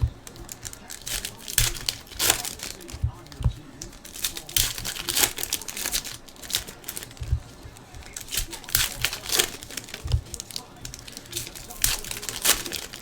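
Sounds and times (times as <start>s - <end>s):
cards sliding: 0.0s - 13.0s
foil wrappers crinkling: 0.0s - 13.0s
soft thumps on table: 7.2s - 8.1s.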